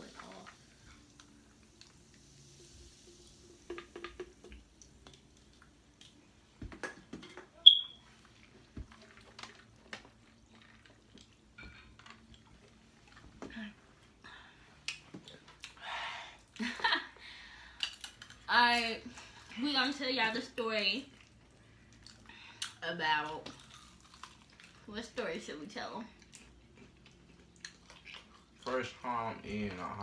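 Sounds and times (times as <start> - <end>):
crunchy bites and chewing: 23.5 - 24.8.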